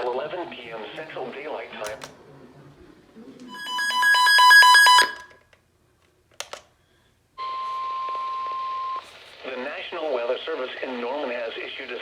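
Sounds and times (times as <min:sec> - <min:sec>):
two-pitch electronic alert warble: 0:03.5 - 0:05.2.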